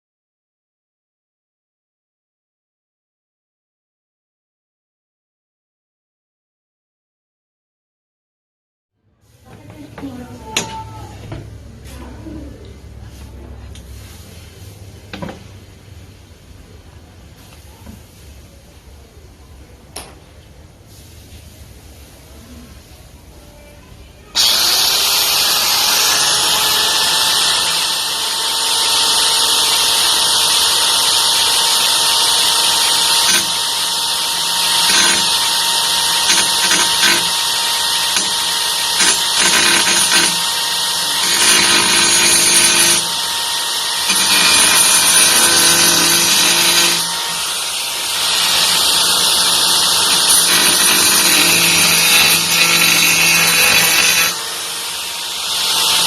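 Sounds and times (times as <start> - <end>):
angle grinder running: 24.4 - 56.0.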